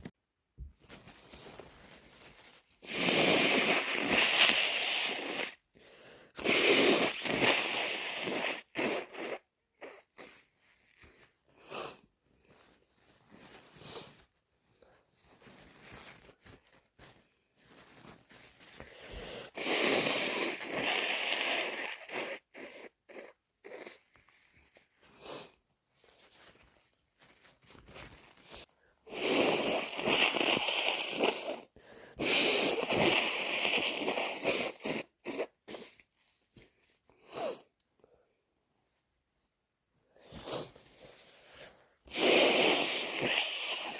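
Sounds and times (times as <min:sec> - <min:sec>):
person blowing nose: 0:01.8 - 0:12.7, 0:13.4 - 0:14.3, 0:15.4 - 0:25.6, 0:28.0 - 0:36.3, 0:37.1 - 0:37.7, 0:40.1 - 0:43.9
person sniffing: 0:02.8 - 0:12.1, 0:18.7 - 0:24.3, 0:25.0 - 0:25.6, 0:28.5 - 0:36.2, 0:37.2 - 0:37.8, 0:40.1 - 0:43.9.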